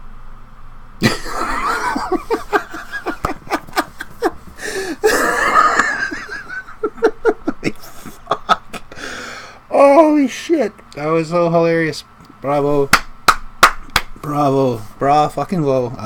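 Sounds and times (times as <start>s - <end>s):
man laughing hard: 1.0s - 9.1s.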